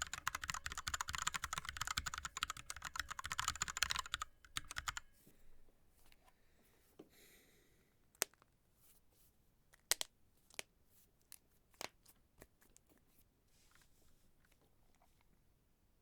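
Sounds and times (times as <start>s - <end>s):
keyboard key clicks: 0.0s - 5.0s.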